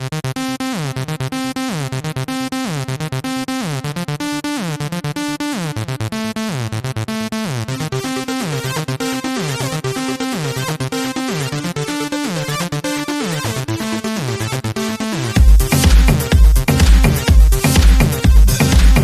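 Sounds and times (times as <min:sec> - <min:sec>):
electronic music with synthesizer: 0:00.0 - 0:19.0
sliding bass line: 0:04.6 - 0:19.0.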